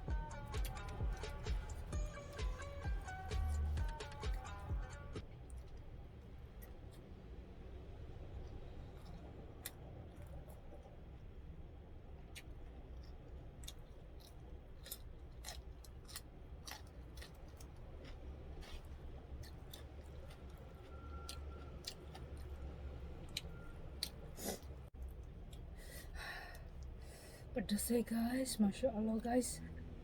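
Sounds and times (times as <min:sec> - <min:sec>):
steady low hum: 0:00.0 - 0:20.9
quiet chewing with smacks: 0:05.2 - 0:07.4, 0:08.1 - 0:11.3, 0:12.1 - 0:27.1.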